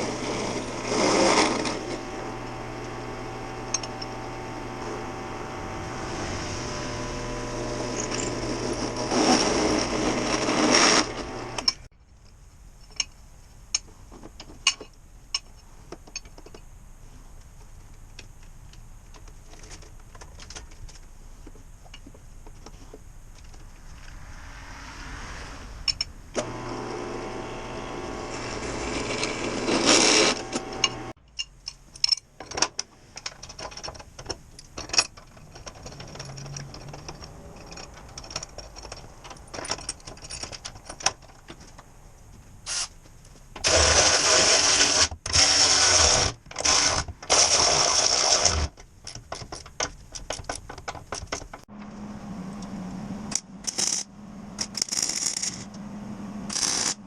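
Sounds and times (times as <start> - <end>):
power tool running: 0.0 - 11.8, 26.4 - 31.2, 43.6 - 48.7
clicks and knocks of parts handled: 11.6 - 16.7, 17.4 - 23.8, 30.6 - 43.6, 48.7 - 51.6
harsh bursts from noisy tool: 26.4 - 31.2, 42.7 - 43.0, 43.6 - 48.7.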